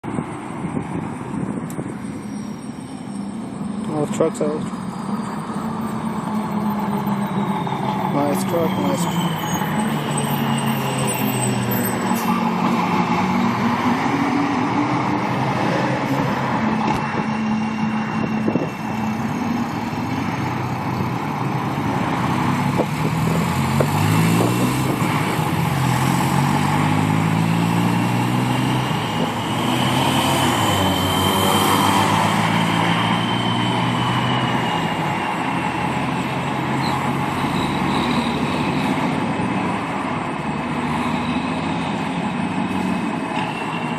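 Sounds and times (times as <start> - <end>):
turbocharger whistle: 4.8 - 12.4, 28.9 - 35.6, 36.8 - 39.0
diesel truck engine running: 12.2 - 41.0.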